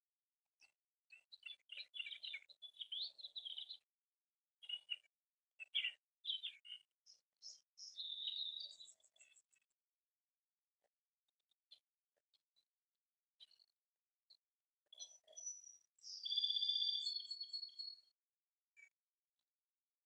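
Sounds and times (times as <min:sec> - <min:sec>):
songbirds chirping and trilling: 0:00.6 - 0:03.9, 0:04.6 - 0:09.7, 0:14.9 - 0:18.1.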